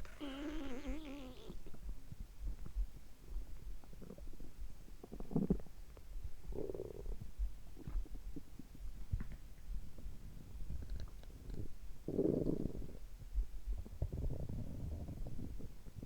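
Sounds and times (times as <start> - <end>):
stomach gurgling: 3.8 - 9.4.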